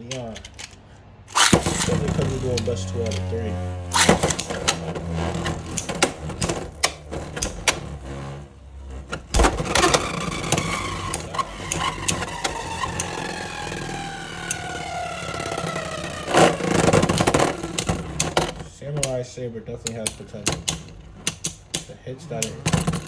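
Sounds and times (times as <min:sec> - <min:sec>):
whirring whine of spinning tops: 0:01.3 - 0:18.7
spinning tops clicking and knocking: 0:03.9 - 0:08.1, 0:09.0 - 0:19.2, 0:19.9 - 0:23.0
tops colliding with clicks: 0:03.9 - 0:19.2, 0:19.9 - 0:23.0.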